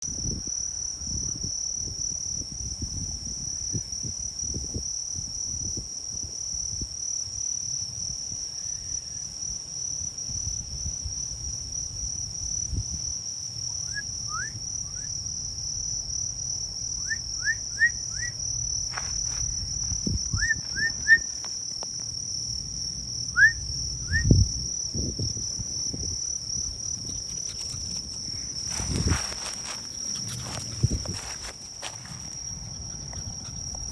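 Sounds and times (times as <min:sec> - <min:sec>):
insect trilling: 0:17.0 - 0:33.9.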